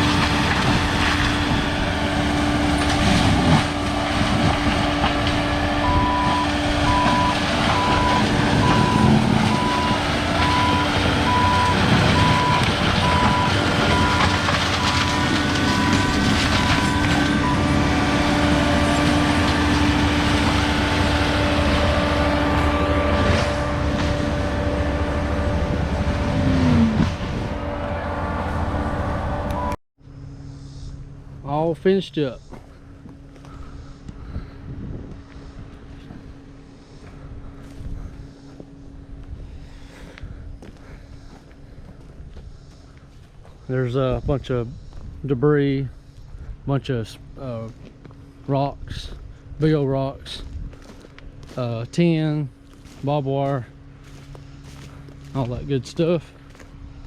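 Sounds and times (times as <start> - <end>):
diesel engine running: 0.0 - 57.0
backup alarm beeping: 5.8 - 18.0, 29.5 - 29.8.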